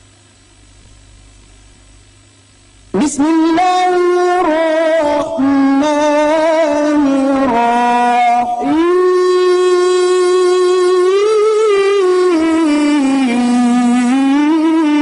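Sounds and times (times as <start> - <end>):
faint hum: 0.0 - 15.0
man reciting melodically: 2.9 - 15.0.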